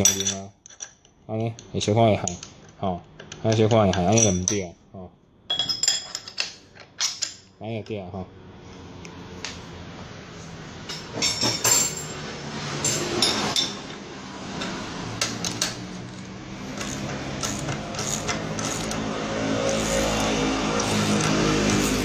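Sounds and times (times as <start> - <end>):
metal tool parts clinking: 0.0 - 1.2, 5.5 - 7.5, 10.9 - 12.2, 15.2 - 19.0
low mechanical hum: 8.3 - 22.0.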